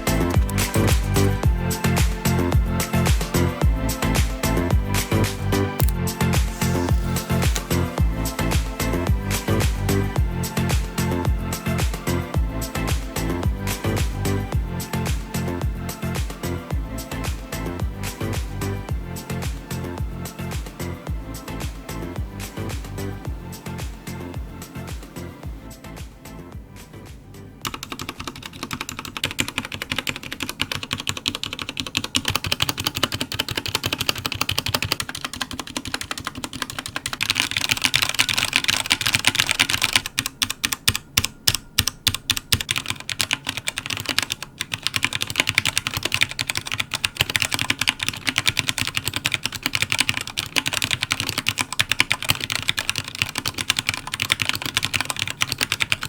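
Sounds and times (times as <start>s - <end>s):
mechanical keyboard typing: 0.0s - 1.4s, 5.8s - 7.9s, 27.6s - 56.0s.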